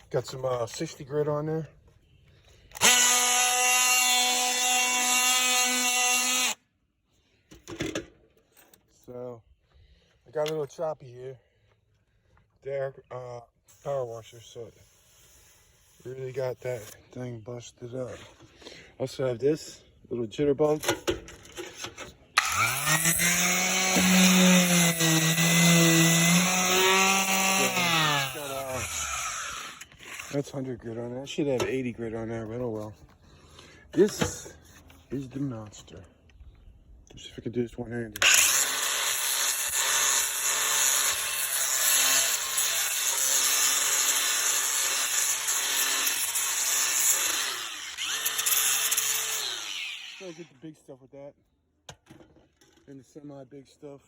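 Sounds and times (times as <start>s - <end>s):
palm sander motor whining: 2.8s - 6.6s, 22.4s - 30.4s, 38.2s - 50.5s.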